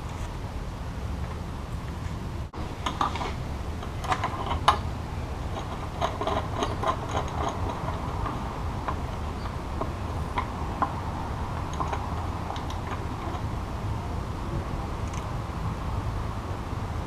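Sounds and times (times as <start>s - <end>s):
steady low rumble: 0.0s - 17.0s
metal tools clicking and clinking: 5.5s - 10.9s.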